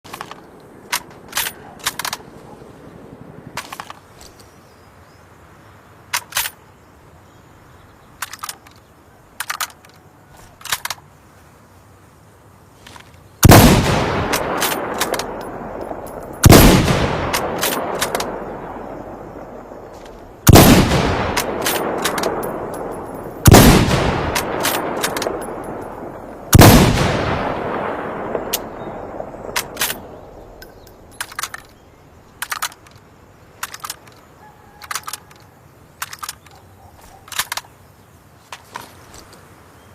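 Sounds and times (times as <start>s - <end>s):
rifle shots with echo: 13.4s - 31.1s.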